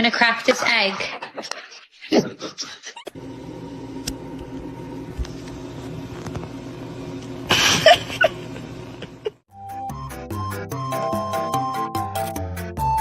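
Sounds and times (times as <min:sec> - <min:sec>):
low machine hum: 0:03.2 - 0:09.4.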